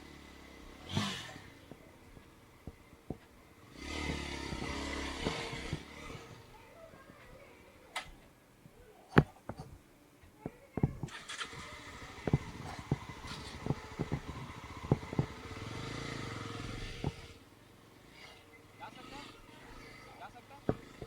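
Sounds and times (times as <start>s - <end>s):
vehicle knocks and thumps: 0.0s - 7.2s, 9.2s - 9.8s, 10.4s - 17.4s, 19.0s - 21.0s
engine hum: 0.0s - 8.3s, 10.4s - 21.0s.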